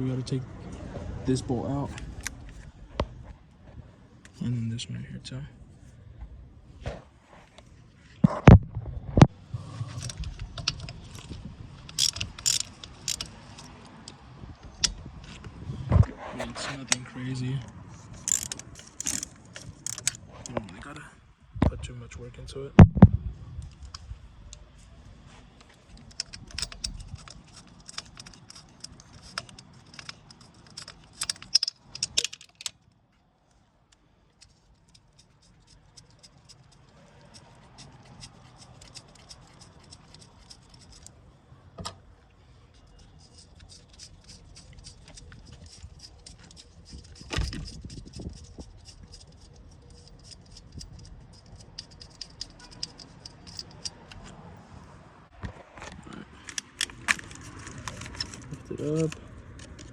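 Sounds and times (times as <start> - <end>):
ratchet wrench clicking: 10.0 - 14.2, 18.2 - 20.2, 26.0 - 32.7, 34.4 - 41.1, 42.8 - 54.2
metal tools clunking: 18.2 - 20.6.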